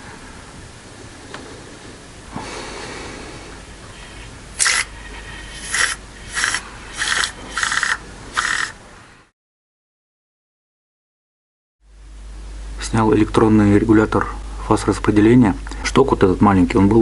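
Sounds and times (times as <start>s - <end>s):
compressed air blasts: 3.9s - 8.8s.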